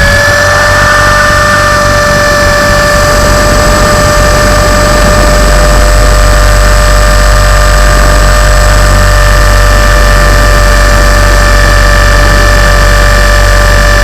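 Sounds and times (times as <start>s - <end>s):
rc helicopter motor whining: 0.0s - 14.0s.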